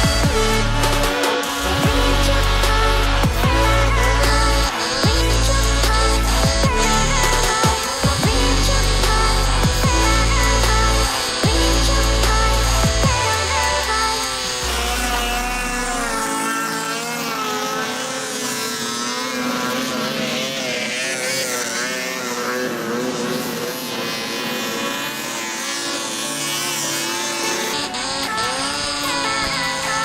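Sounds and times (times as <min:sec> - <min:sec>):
background music deep bass: 0:00.0 - 0:16.5
snowmobile engine running hard: 0:00.0 - 0:30.0.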